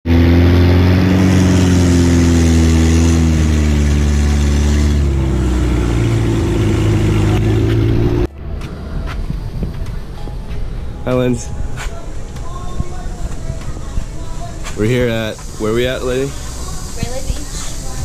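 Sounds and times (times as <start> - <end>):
engine running loudly: 0.0 - 8.5.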